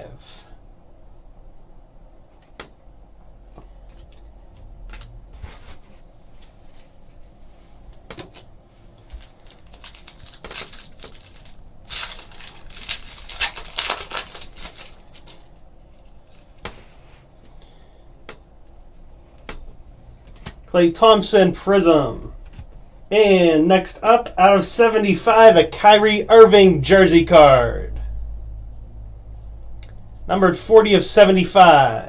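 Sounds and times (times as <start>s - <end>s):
wrappers rustling and crinkling: 8.2s - 17.2s.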